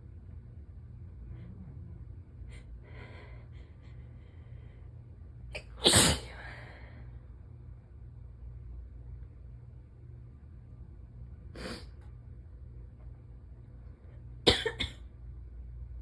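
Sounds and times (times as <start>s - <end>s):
loud forceful sneeze: 5.6s - 6.4s.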